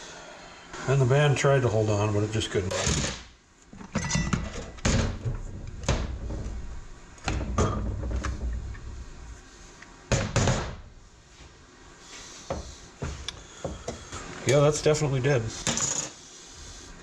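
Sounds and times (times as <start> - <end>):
metal parts knocking and clunking: 3.7 - 9.3.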